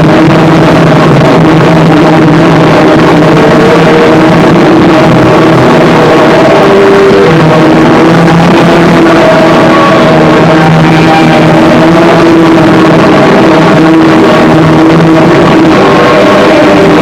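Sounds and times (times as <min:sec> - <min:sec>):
harsh distorted noise music: 0:00.0 - 0:17.0.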